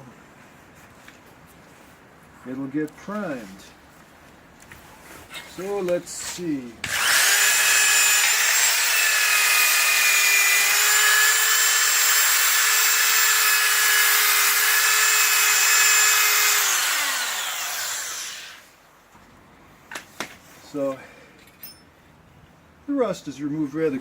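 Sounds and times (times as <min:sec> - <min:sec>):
electric wire brush motor whine: 0:06.9 - 0:18.7.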